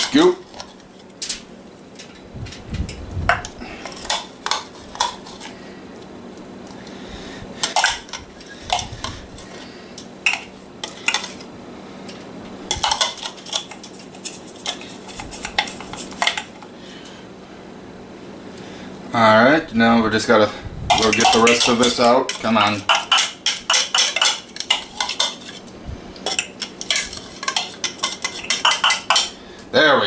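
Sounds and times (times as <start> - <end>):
spoon clinking against container: 20.9 - 25.4, 26.3 - 29.3.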